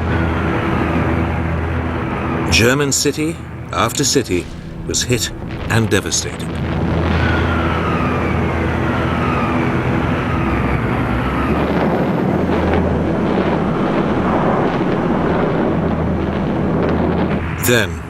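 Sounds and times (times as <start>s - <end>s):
bomber engines droning: 0.0s - 18.0s
falling whistle: 6.9s - 12.7s.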